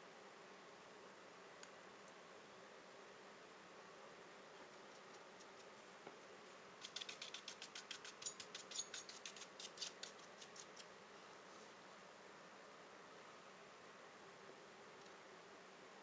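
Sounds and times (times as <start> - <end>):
faint steady hiss: 0.0 - 16.0
rapid light sharp clicks: 4.9 - 6.2, 6.8 - 10.9.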